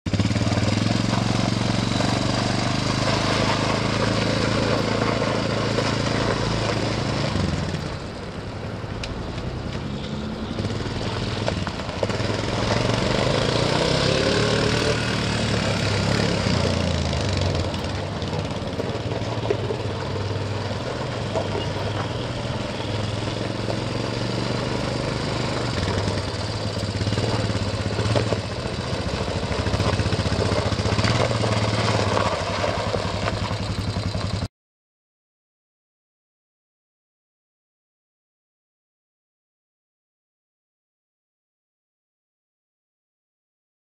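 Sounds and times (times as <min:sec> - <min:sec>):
atv engine running: 0:00.1 - 0:34.5.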